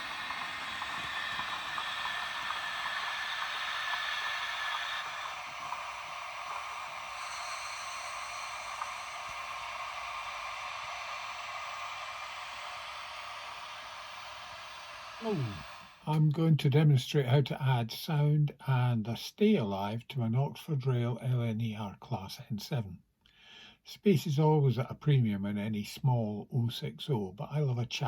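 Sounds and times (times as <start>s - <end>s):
steam hiss and bubbling from speaker: 0.0s - 16.5s.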